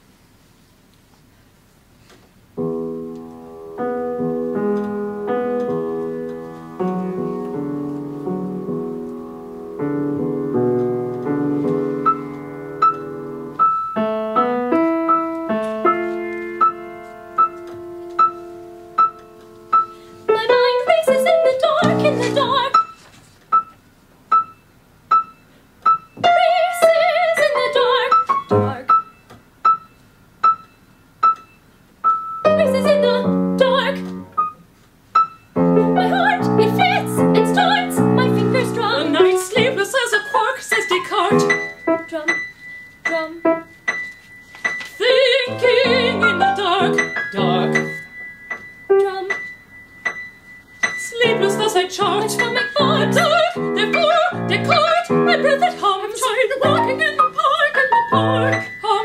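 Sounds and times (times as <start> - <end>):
piano chords: 2.6 - 34.6, 35.2 - 59.0
voices: 36.0 - 41.5.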